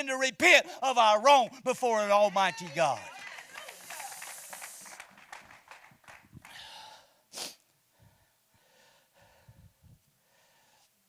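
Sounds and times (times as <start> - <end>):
man breathing: 6.4 - 11.0
sharp sniff: 6.6 - 7.6.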